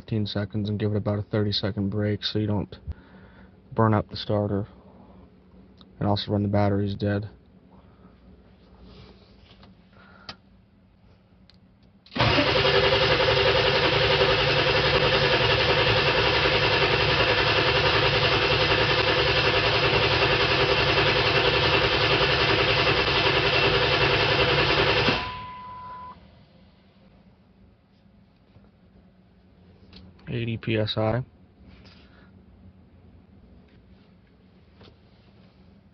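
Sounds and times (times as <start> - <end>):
starter cranking engine: 12.1 - 25.6
short steady beep: 25.2 - 26.2.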